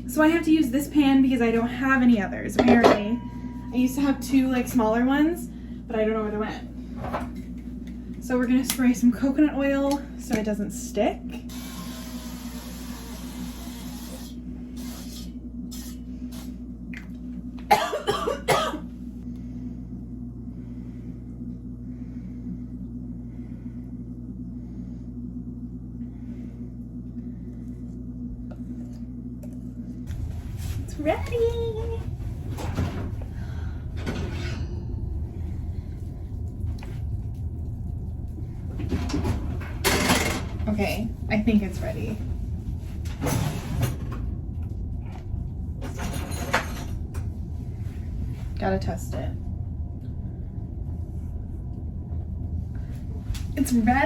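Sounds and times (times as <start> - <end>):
kitchen knocks and clatters: 2.6 - 3.2, 45.8 - 47.0
person coughing: 17.7 - 18.9
low rumble: 19.0 - 54.0.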